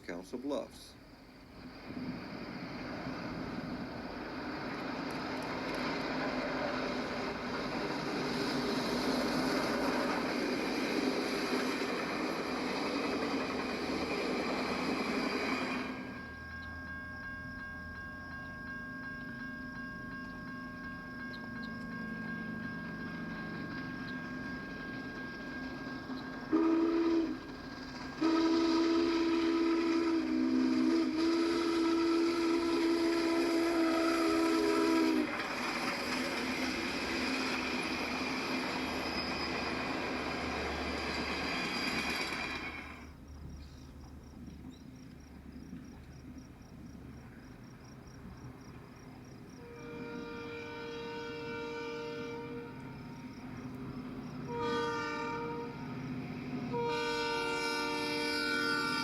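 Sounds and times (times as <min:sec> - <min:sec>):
train rumbling along track: 0:00.0 - 0:59.0
train horn blasts: 0:21.3 - 0:35.6, 0:49.5 - 0:59.0.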